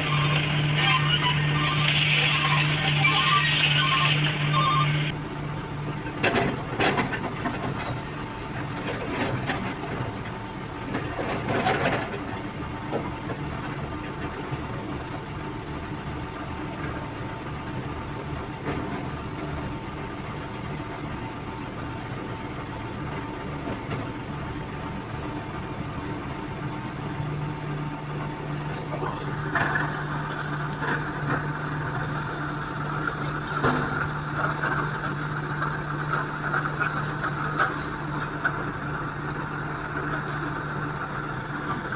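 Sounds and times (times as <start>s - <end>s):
diesel engine of heavy machinery: 0.0s - 41.9s.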